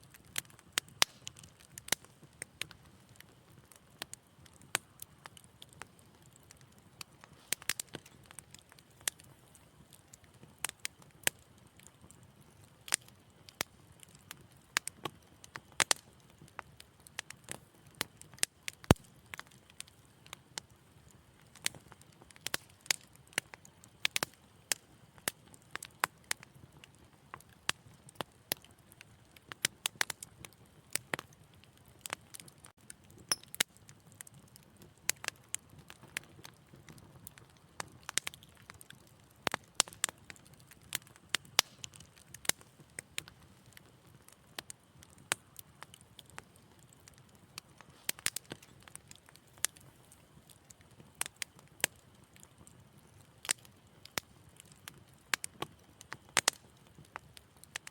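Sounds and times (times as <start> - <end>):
wood fire crackling and popping: 0.0 - 57.9
hiss of burning: 6.4 - 9.7, 47.5 - 50.2.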